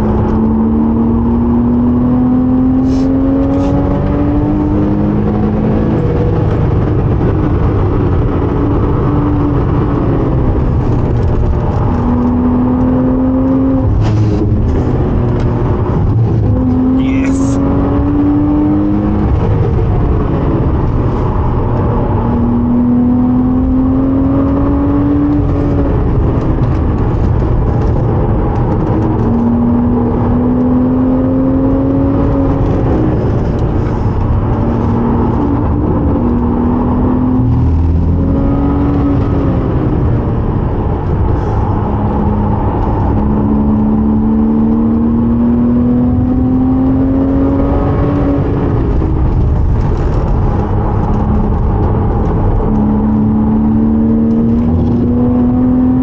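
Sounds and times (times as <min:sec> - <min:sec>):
car engine accelerating: 0:00.0 - 0:56.0
road and wind noise: 0:00.0 - 0:56.0.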